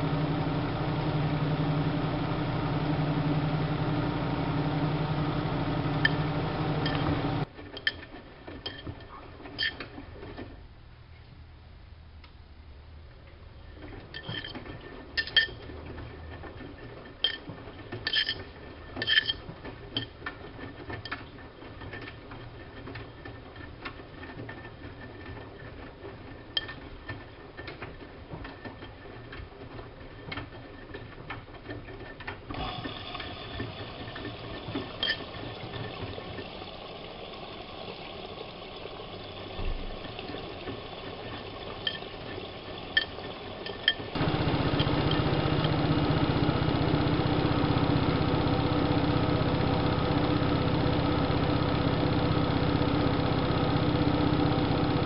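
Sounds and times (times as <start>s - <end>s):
washing machine mechanical hum: 0.0s - 55.0s
water sloshing in washing machine: 13.8s - 55.0s.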